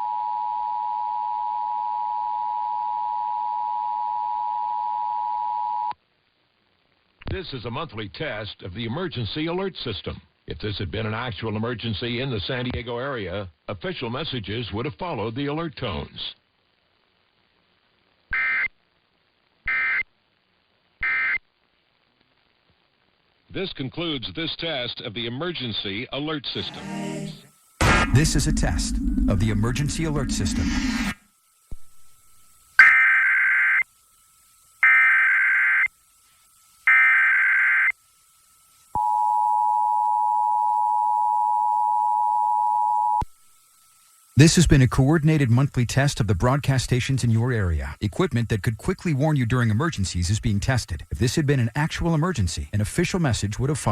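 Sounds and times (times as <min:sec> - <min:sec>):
buzzing two-tone data bursts: 0:26.8 - 0:39.1, 0:43.2 - 0:45.6.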